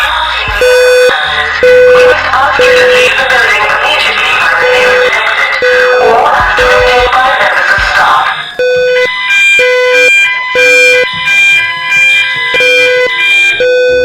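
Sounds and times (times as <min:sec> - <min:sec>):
two-tone fire alarm sounder: 0:00.0 - 0:14.0.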